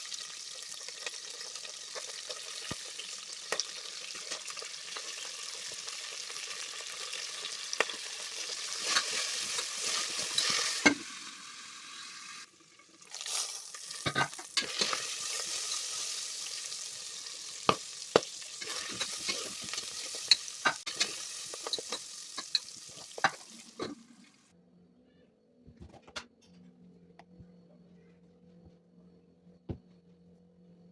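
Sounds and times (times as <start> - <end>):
food sizzling in hot oil: 0.0 - 24.4
spoon clicking against pan: 17.7 - 23.4.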